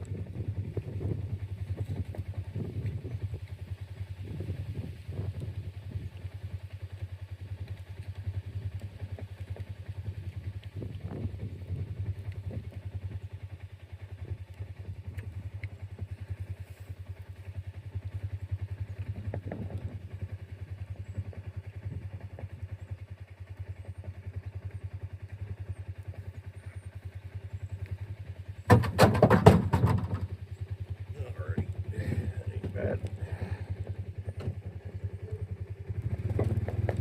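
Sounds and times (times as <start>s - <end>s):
engine running steadily: 0.0s - 37.0s
clattering knocks: 28.7s - 30.3s.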